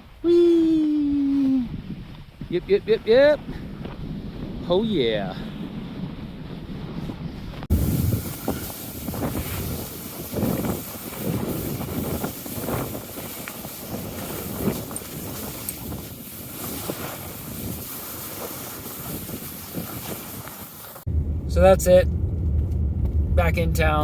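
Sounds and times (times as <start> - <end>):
wind rushing over microphone: 0.0 - 24.0
skis hissing on snow: 7.7 - 21.1.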